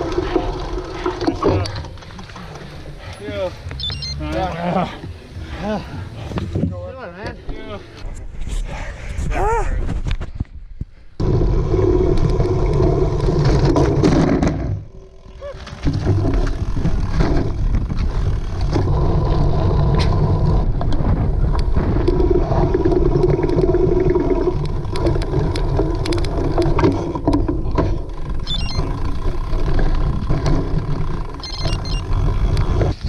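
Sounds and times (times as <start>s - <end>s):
bike rolling and rattling: 0.0s - 8.4s, 10.0s - 33.0s
rushing wind: 16.1s - 27.1s.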